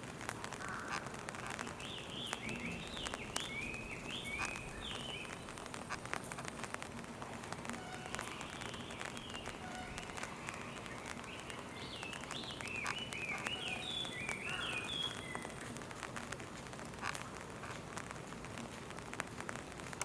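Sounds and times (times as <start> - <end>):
rain pattering: 0.0 - 20.0
songbird singing: 0.7 - 15.9.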